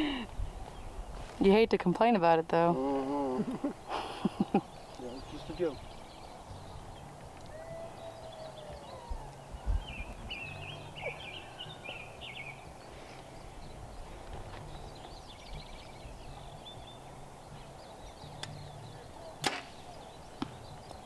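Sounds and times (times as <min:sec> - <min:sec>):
wind bumps on microphone: 0:00.0 - 0:02.2, 0:09.1 - 0:10.8
small birds twittering: 0:00.0 - 0:21.0.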